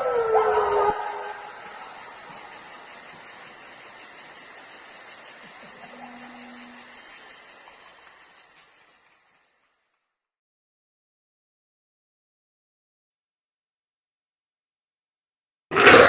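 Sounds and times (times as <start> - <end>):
insects chirping: 0.0 - 10.1.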